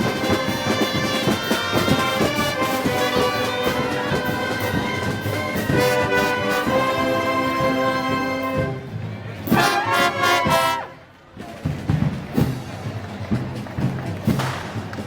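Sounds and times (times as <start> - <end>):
brass and woodwinds playing: 0.0 - 11.2
held brass chords: 0.0 - 11.2
drum beats: 0.0 - 15.0.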